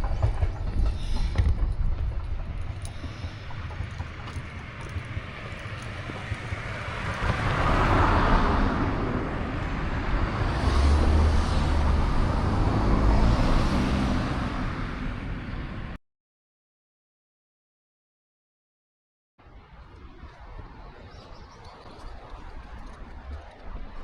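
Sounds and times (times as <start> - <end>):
vehicle rumbling past: 0.0 - 16.0.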